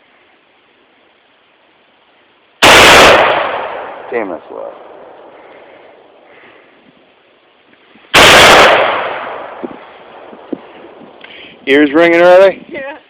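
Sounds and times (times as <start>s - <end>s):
rifle shot: 2.6s - 5.4s, 8.1s - 10.5s.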